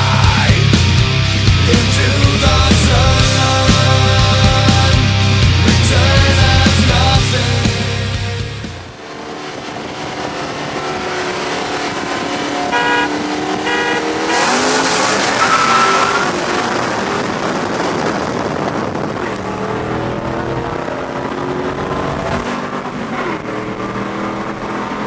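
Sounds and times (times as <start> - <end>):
car engines revving and accelerating: 0.0 - 25.0
loud rush of noise: 0.0 - 25.0
rising squeal: 14.0 - 16.4.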